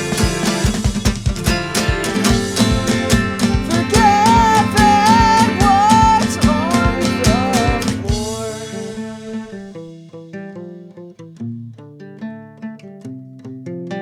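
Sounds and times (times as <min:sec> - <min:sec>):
rock guitars over a beat: 0:00.0 - 0:11.0
bending lead guitar melody: 0:00.0 - 0:14.0.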